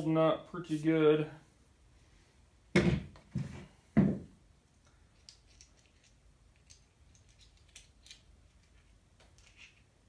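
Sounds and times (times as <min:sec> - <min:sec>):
metal tool parts clicking: 0:05.1 - 0:09.9.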